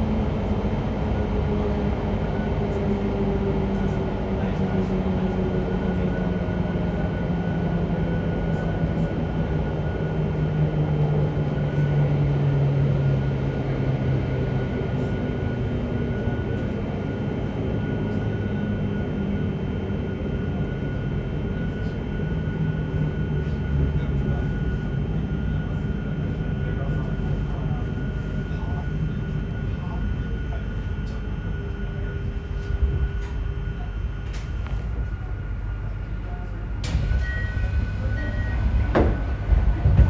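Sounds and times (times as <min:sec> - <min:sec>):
steady high whine: 0:36.8 - 0:40.0
wheel on rail rumble: 0:36.8 - 0:40.0.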